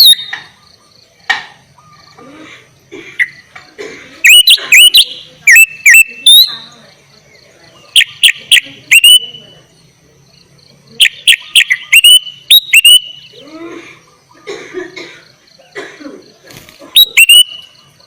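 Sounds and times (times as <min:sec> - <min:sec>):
bird whistling sharp notes: 0:00.0 - 0:00.6, 0:11.0 - 0:13.4, 0:17.0 - 0:17.8
bird chattering calls: 0:00.0 - 0:09.8, 0:10.9 - 0:14.6, 0:16.7 - 0:18.0.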